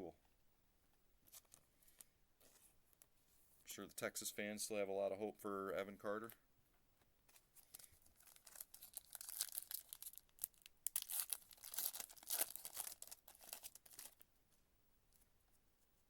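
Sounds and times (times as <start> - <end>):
wrapper tearing and crinkling: 7.6 - 14.2.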